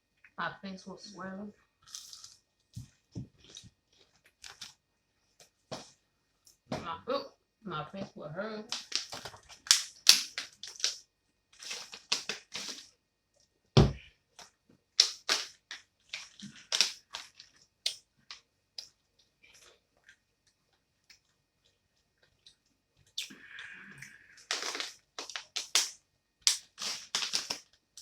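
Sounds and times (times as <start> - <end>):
chewing crispy food: 1.6 - 4.8, 8.7 - 11.0, 11.6 - 12.9, 14.4 - 27.9
heavy thump: 13.8 - 14.0.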